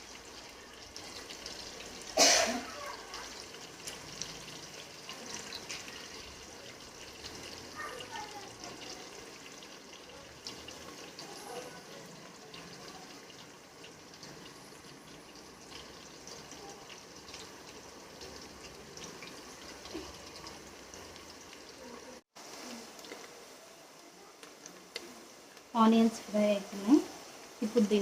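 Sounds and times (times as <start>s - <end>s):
onions sizzling in hot oil: 0.0s - 28.0s.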